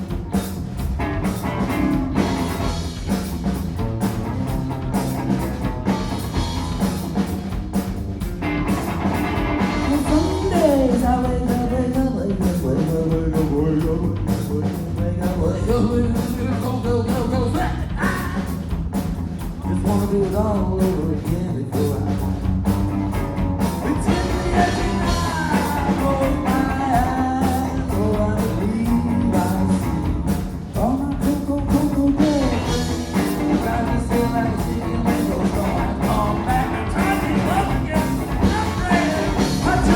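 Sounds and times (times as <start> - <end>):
rock band playing: 0.0 - 39.9
person singing: 9.8 - 18.5, 23.8 - 30.1, 30.8 - 39.9.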